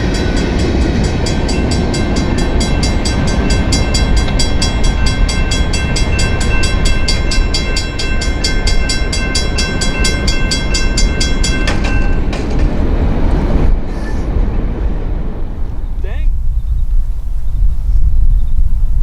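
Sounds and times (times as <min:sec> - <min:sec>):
fast high ringing: 0:00.0 - 0:12.4
train rumble: 0:00.0 - 0:19.0.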